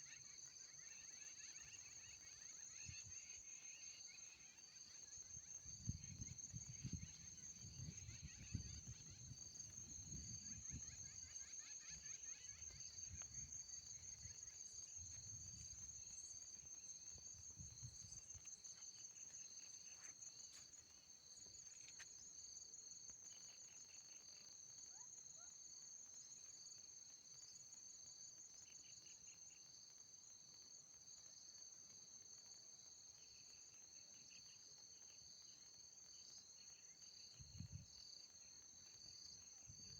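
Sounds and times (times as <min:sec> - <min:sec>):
insects trilling: 0:00.0 - 0:31.7
lower insect chirping: 0:00.0 - 0:39.9.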